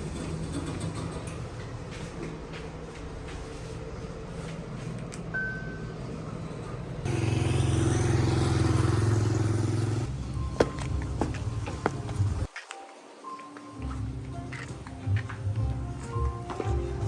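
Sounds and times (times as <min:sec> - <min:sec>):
vehicle engine running: 0:06.6 - 0:12.5.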